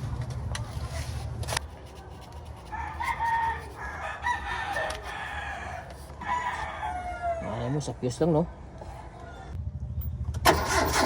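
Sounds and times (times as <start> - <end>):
rooster crowing: 2.7 - 7.8.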